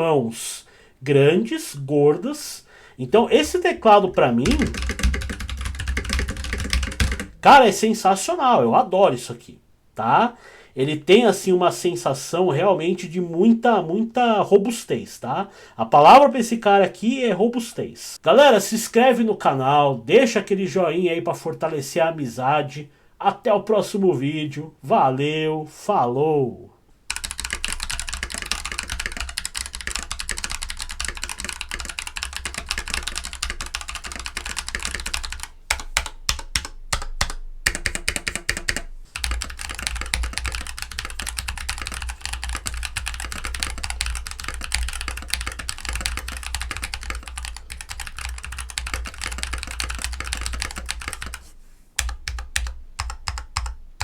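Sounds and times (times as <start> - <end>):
typing on mechanical keyboard: 3.4 - 7.4, 27.1 - 51.4, 52.0 - 53.8.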